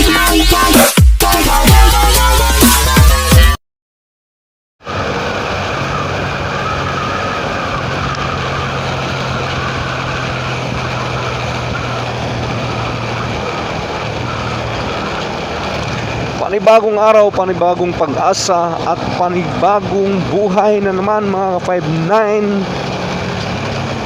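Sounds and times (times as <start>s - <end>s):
road noise: 4.8s - 24.0s
wind noise: 4.9s - 20.4s
motorcycle engine running: 4.9s - 24.0s.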